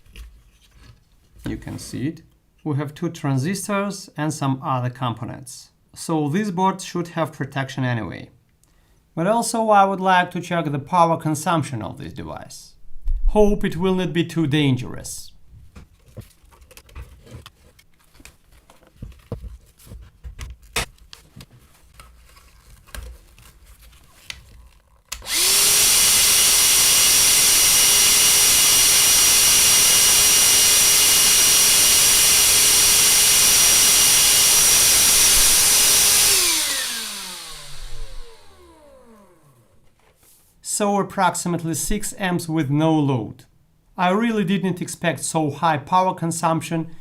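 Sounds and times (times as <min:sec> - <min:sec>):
electric motor whining: 0:25.2 - 0:39.8.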